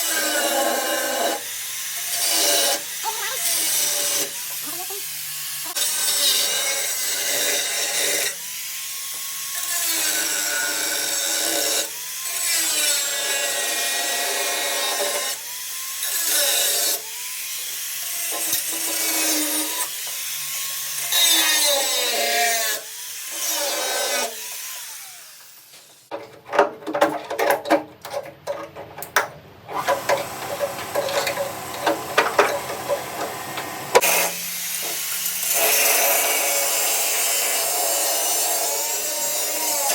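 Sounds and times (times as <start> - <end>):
power tool cutting or grinding: 0.0 - 26.1, 29.7 - 39.9
clatter and scraping: 26.1 - 34.0.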